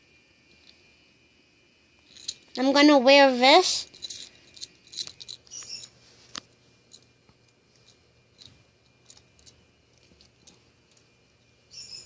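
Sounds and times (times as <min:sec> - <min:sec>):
small trinkets clicking: 0:02.0 - 0:02.6, 0:03.8 - 0:06.0, 0:06.9 - 0:11.2.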